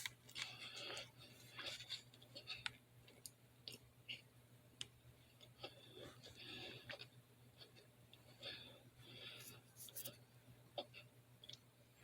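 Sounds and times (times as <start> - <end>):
crackly chewing: 0.0 - 8.5.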